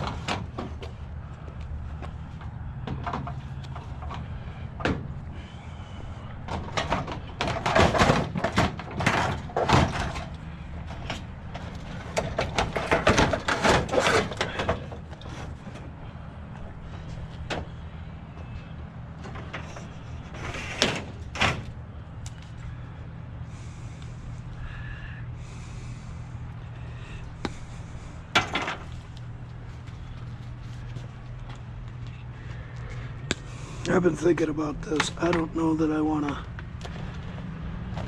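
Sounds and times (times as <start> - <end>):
low hum: 0.0 - 38.0
scrap and cords clattering: 6.5 - 15.9.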